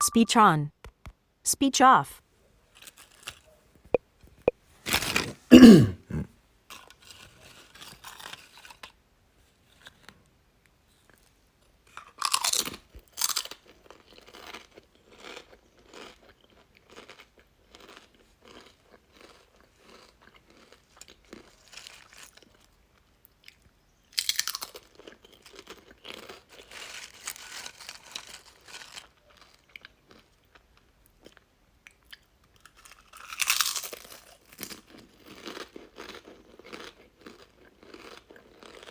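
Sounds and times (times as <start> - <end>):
crunching bites of chips: 4.9 - 9.0, 12.0 - 38.9
chewing crunches: 6.1 - 8.9, 12.0 - 23.6, 24.2 - 38.9.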